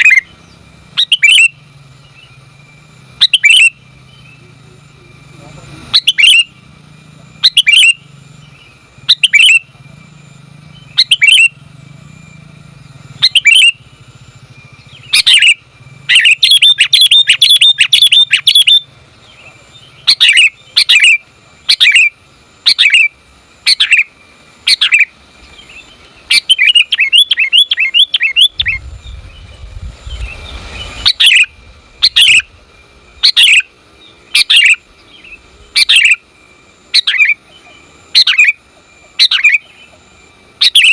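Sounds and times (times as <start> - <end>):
bird chirping and chattering: 0.0 - 11.7, 12.3 - 13.9, 14.5 - 32.6, 33.2 - 36.2, 37.0 - 40.0, 40.6 - 40.9
low rumble: 28.5 - 33.2.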